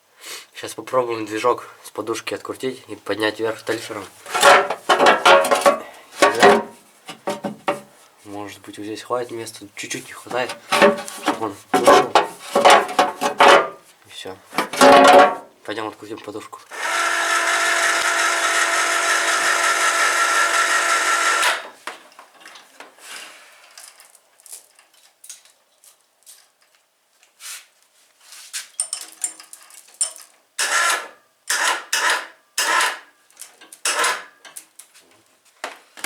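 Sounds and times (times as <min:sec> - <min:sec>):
handling clicks and knocks: 0:03.7 - 0:07.9, 0:10.2 - 0:13.8, 0:14.5 - 0:15.5
power tool whining: 0:16.7 - 0:21.8.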